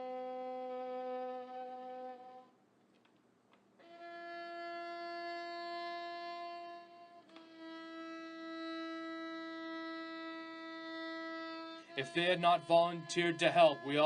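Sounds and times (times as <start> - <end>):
bowed string sustained notes: 10.9 - 14.0.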